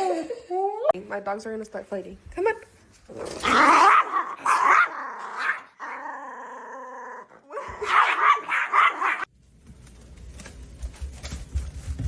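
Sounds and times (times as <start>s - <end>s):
dogs growling and barking: 3.1s - 9.3s.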